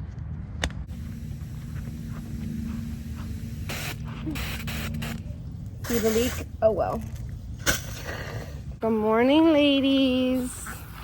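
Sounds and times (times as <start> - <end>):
spray bursts: 0.9 - 6.6
water hissing from hose leak: 5.8 - 6.5.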